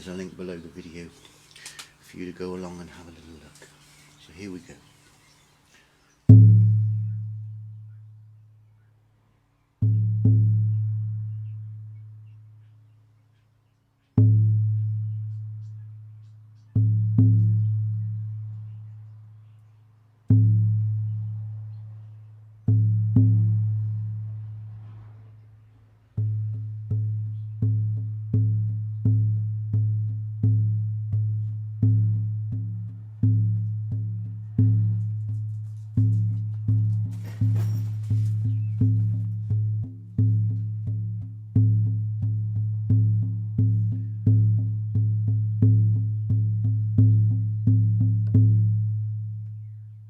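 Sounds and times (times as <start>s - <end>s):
hand drum booming: 6.3s - 7.8s, 9.8s - 11.8s, 14.2s - 15.6s, 16.8s - 18.5s, 20.3s - 21.7s, 22.6s - 24.7s, 26.2s - 49.6s.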